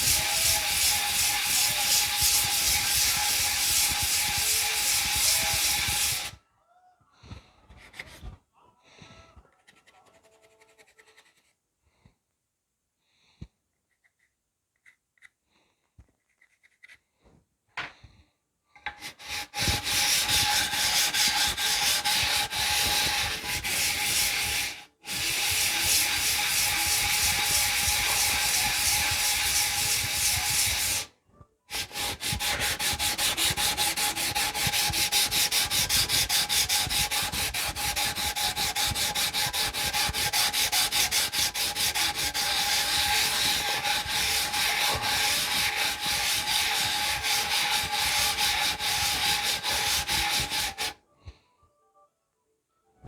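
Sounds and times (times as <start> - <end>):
sanding on sandpaper by hand: 0.0 - 6.4, 19.0 - 31.1, 31.7 - 51.0.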